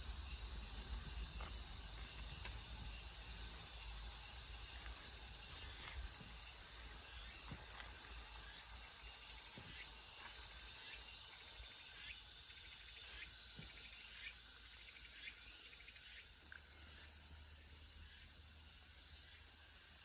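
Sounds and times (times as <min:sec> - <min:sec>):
steady hiss: 0:00.0 - 0:14.2
insects chirping in trills: 0:00.0 - 0:20.0.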